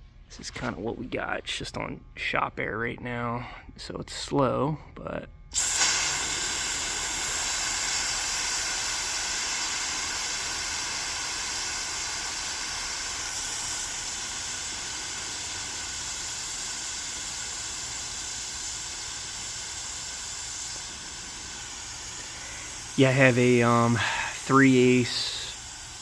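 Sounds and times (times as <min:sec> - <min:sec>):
compressed air hissing: 0:05.5 - 0:26.0.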